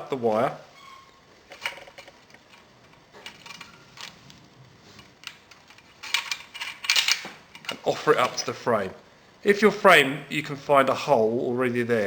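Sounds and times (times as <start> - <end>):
metallic clicks and clinks: 1.5 - 4.2, 5.2 - 8.4.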